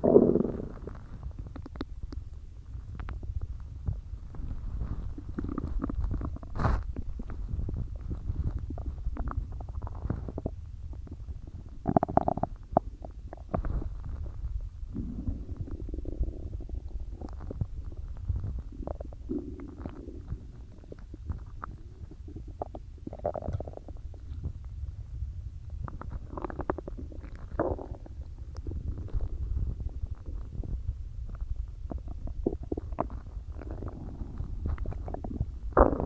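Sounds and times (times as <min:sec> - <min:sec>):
stomach gurgling: 0:00.0 - 0:36.0
low rumble: 0:13.5 - 0:22.0.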